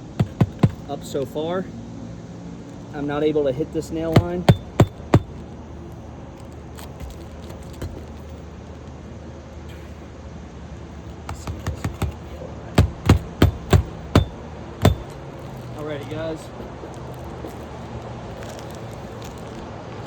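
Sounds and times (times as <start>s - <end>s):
hammer hitting nails: 0.0s - 0.9s, 4.1s - 5.4s, 6.8s - 8.1s, 11.3s - 15.2s.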